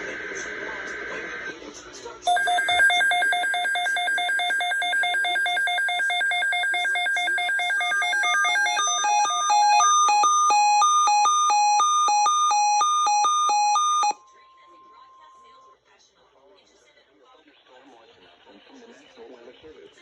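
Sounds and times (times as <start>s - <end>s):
digital header tones: 2.3s - 15.7s
weather radio alarm beeps: 2.3s - 15.7s.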